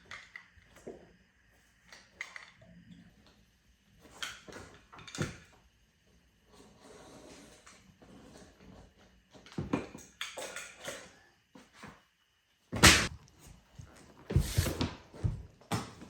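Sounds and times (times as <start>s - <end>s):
knocks and clicks of flooring work: 12.8s - 16.0s.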